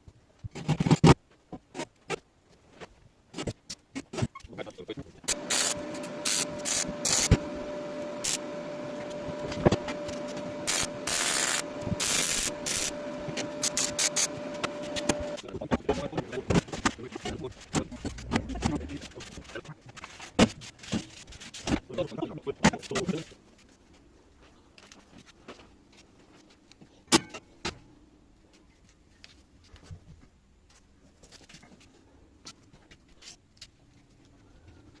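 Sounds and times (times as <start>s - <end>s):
low background hum: 4.2s - 35.0s
steady machine hum: 5.2s - 19.8s.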